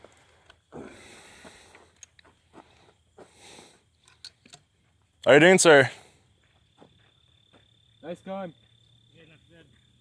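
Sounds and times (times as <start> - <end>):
soft shotgun loading clicks: 4.0 - 4.7.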